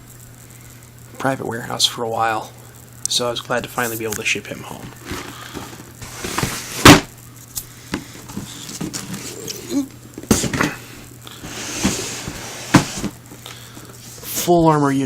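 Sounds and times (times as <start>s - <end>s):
cardboard boxes rustling: 4.2s - 7.2s, 7.8s - 14.5s
box knocking: 4.9s - 7.1s, 10.2s - 10.8s, 11.7s - 13.2s.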